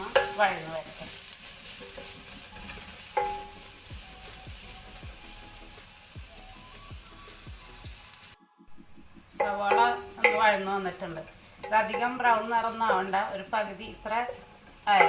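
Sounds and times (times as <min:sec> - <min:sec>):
spoon clinking against pan: 0:00.0 - 0:01.2, 0:01.8 - 0:04.0, 0:09.4 - 0:15.0
onions sizzling in oil: 0:00.0 - 0:15.0.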